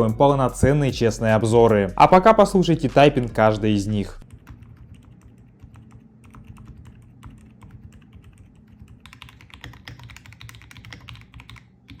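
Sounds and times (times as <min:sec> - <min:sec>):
mechanical keyboard typing: 0:04.2 - 0:12.0.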